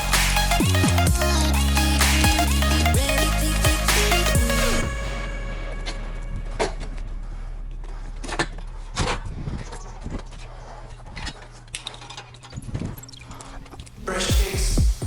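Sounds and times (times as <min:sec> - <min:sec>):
low steady hum: 0:02.8 - 0:12.2.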